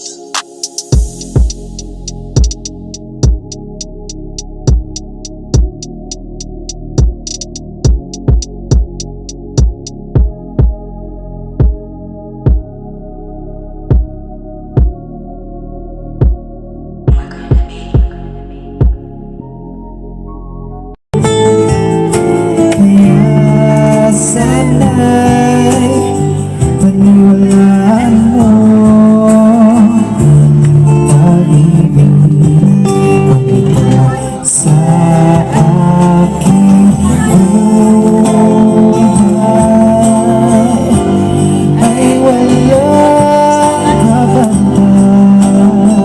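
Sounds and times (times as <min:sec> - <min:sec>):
song with strummed guitar: 0:21.2 - 0:46.0.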